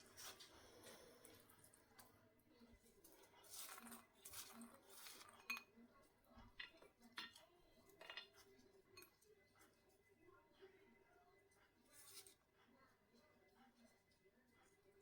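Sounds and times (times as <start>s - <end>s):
utensil clinking against a bowl: 3.0s - 9.9s.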